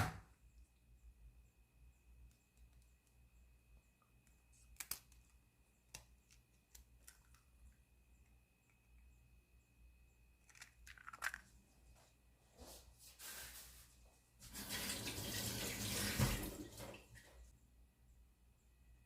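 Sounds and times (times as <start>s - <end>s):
kitchen tap running into sink: 14.4s - 17.4s.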